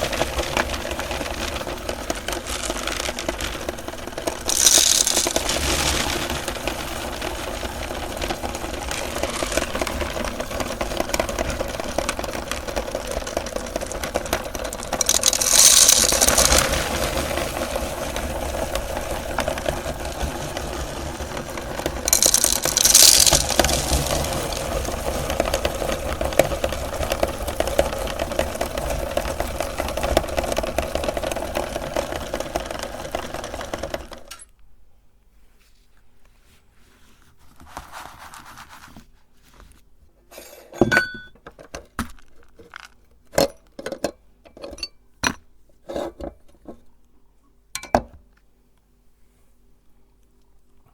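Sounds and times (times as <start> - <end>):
candy crunching: 2.0 - 10.3, 11.8 - 17.9, 22.1 - 26.0.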